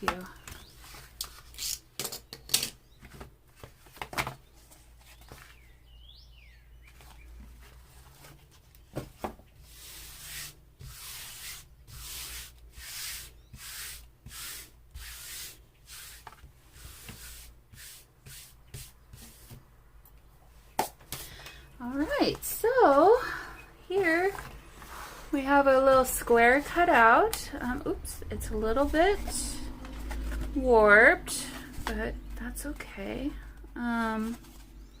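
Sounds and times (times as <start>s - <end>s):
rasping cardboard cutting strokes: 9.6s - 19.4s.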